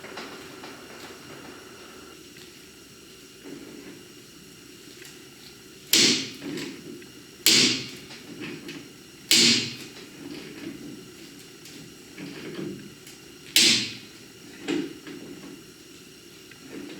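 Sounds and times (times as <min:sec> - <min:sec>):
loud sharp bangs: 0:00.0 - 0:02.2.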